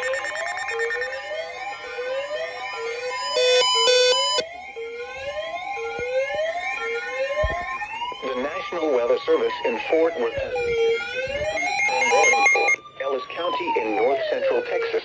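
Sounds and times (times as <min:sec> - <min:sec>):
loud electronic beeps: 0:00.0 - 0:04.4, 0:10.5 - 0:12.8
steady high tone: 0:00.0 - 0:07.3, 0:10.5 - 0:12.8
whooping alert tone: 0:10.6 - 0:12.8.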